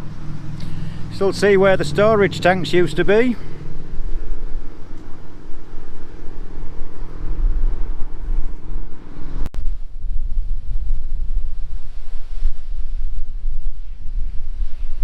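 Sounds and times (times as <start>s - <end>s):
engine humming: 0.0s - 10.0s
wind buffeting microphone: 0.0s - 15.0s.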